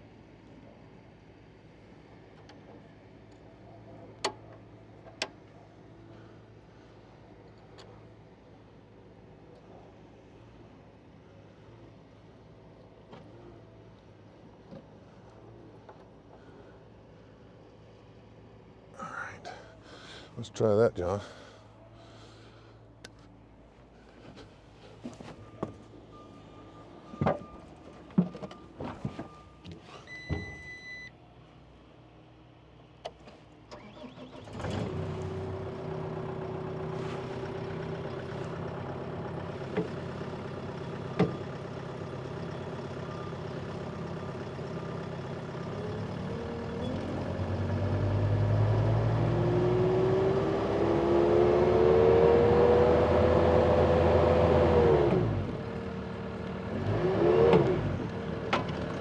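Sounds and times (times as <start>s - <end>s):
short beep: 30.0s - 31.1s
diesel engine running: 33.8s - 59.0s.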